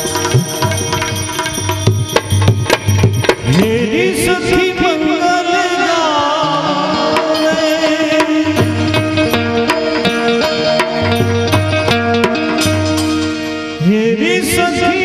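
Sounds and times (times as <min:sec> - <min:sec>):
hand drum strokes: 0:00.0 - 0:03.9, 0:06.4 - 0:13.6
person singing ornamented line: 0:03.4 - 0:11.2.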